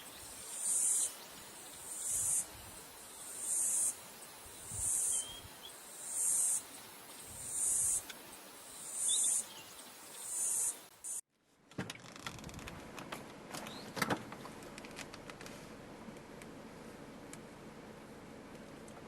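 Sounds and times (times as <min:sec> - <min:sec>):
insects buzzing: 0:00.0 - 0:11.2.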